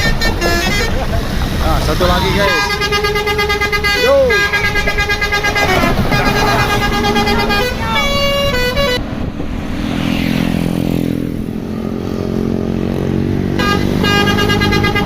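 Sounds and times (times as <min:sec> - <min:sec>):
musical bus horn tune: 0:00.0 - 0:01.2, 0:02.3 - 0:09.0, 0:13.5 - 0:15.0
bus engine running: 0:00.0 - 0:15.0.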